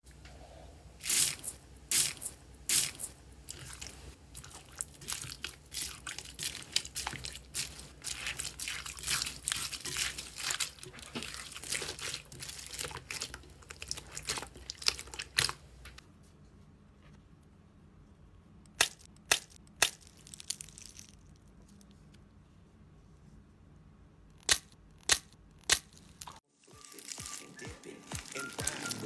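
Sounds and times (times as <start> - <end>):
slime crackling and popping: 1.1 - 15.6, 18.8 - 21.4.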